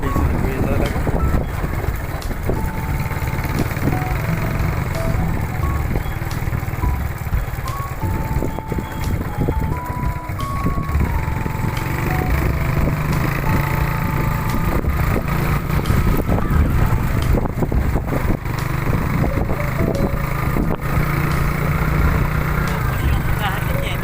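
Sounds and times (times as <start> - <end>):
thin high melody: 0.0 - 24.0
vehicle engine rumbling: 0.0 - 24.0.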